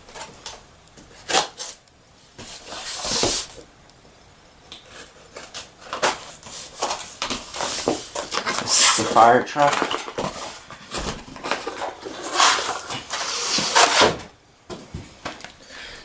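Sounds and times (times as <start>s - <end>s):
cardboard scraping slide: 2.4s - 3.6s, 5.9s - 14.3s.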